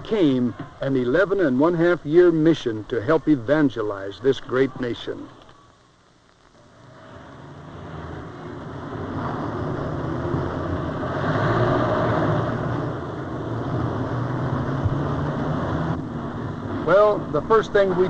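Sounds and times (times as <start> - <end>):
vehicle engine and road noise: 6.6 - 18.0.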